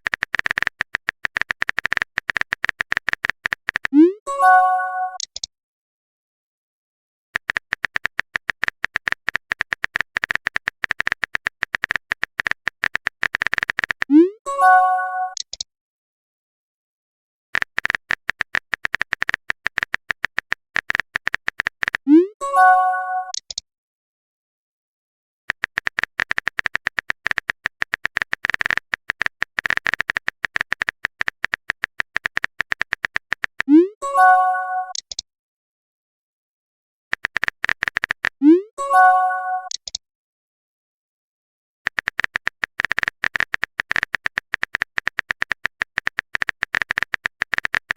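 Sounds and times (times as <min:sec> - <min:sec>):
phone keyboard typing clicks: 0:00.0 - 0:04.1, 0:05.1 - 0:05.5, 0:07.4 - 0:14.2, 0:15.2 - 0:15.6, 0:17.6 - 0:22.1, 0:25.5 - 0:33.8, 0:34.8 - 0:35.2, 0:37.1 - 0:38.4, 0:39.0 - 0:40.0, 0:41.9 - 0:47.9
multi-tone notification chime: 0:04.3 - 0:05.2, 0:14.5 - 0:15.4, 0:22.4 - 0:23.3, 0:34.0 - 0:34.9, 0:38.5 - 0:39.7.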